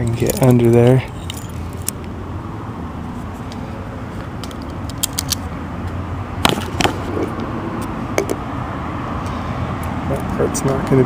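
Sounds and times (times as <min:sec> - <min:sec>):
metallic clicks of lock parts: 0:00.2 - 0:02.1, 0:04.4 - 0:05.5.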